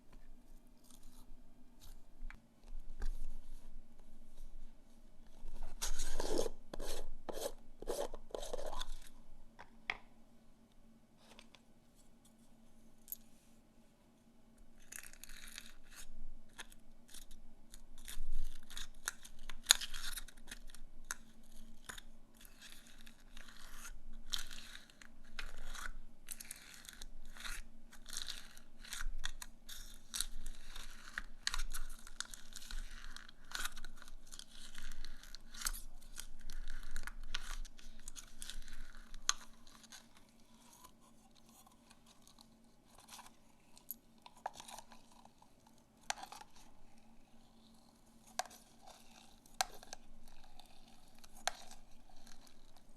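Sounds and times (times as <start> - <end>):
slime crackling and rustling: 22.4 - 52.9.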